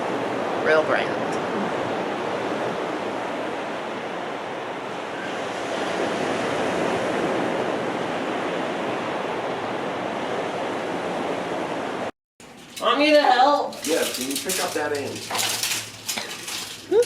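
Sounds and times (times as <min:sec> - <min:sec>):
ocean surf washing onto beach: 0:00.0 - 0:12.1.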